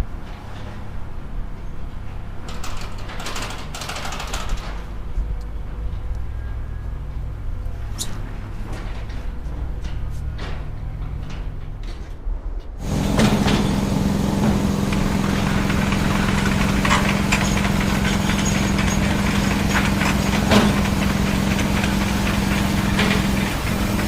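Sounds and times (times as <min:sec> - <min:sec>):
clicks and knocks: 0:12.8 - 0:24.0
heavy machine engine idling: 0:12.8 - 0:24.0.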